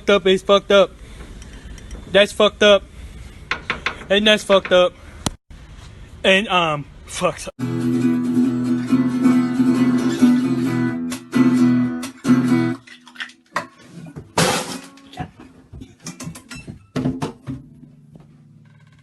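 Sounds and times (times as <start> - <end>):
acoustic guitar strummed: 7.6 - 12.8.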